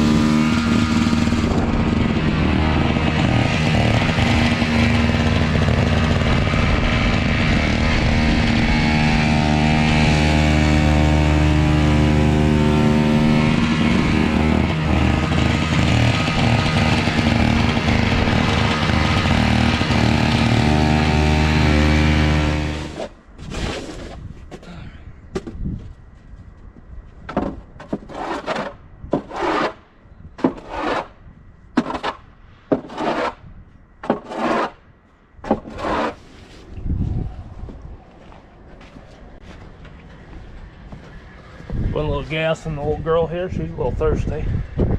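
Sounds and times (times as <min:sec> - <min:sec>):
snowblower engine running: 0:00.0 - 0:23.1.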